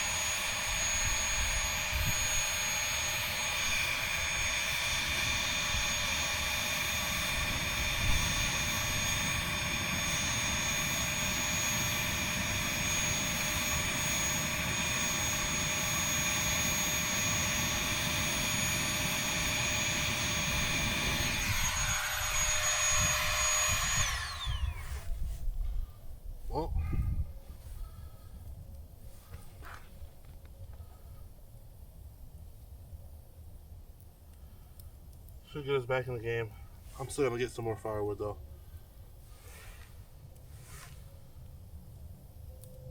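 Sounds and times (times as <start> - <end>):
electric blower whining: 0.0 - 25.4.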